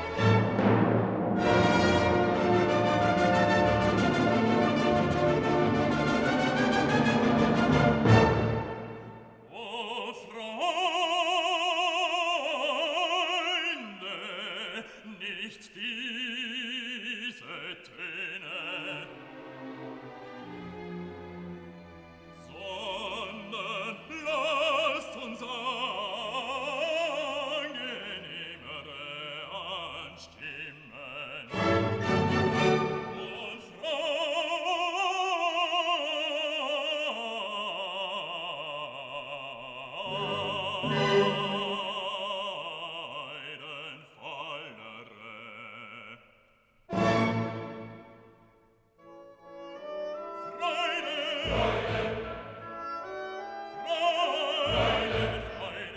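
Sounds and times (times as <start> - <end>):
operatic singing with orchestra: 0.0 - 46.2, 46.9 - 48.4, 49.0 - 55.9.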